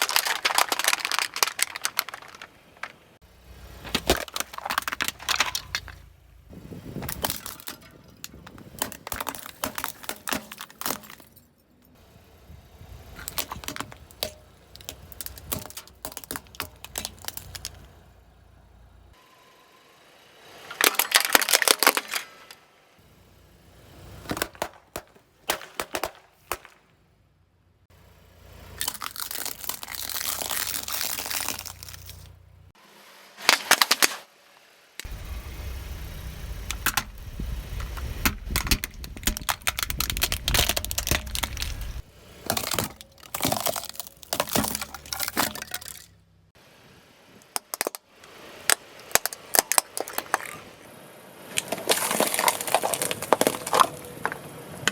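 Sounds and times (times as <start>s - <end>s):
tyre crushing objects: 0.0s - 3.1s, 3.8s - 6.0s, 6.6s - 11.4s, 28.8s - 32.3s, 36.7s - 46.1s, 51.6s - 54.9s
low rumble: 35.1s - 42.1s.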